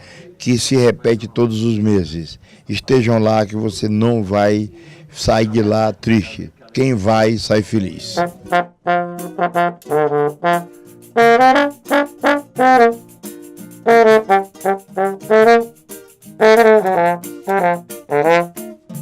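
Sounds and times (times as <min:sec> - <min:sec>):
low steady accompaniment: 0:07.9 - 0:19.0
trombone melody: 0:08.1 - 0:19.0.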